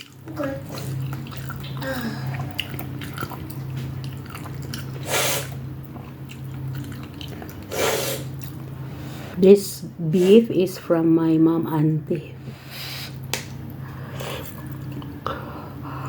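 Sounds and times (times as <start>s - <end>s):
chewing: 0.0s - 5.1s, 5.8s - 7.7s, 14.2s - 15.4s
steady low hum: 0.0s - 16.0s.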